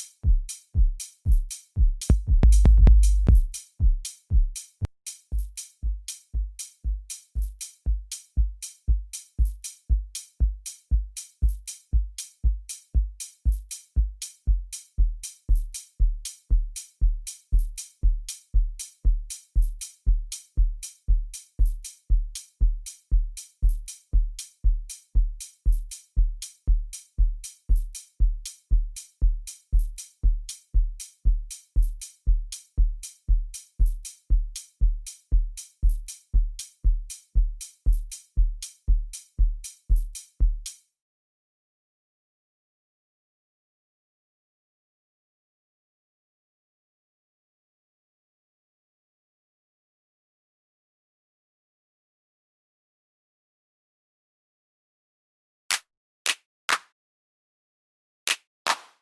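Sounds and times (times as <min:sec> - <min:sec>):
electronic kick drum beat: 0:00.0 - 0:40.8.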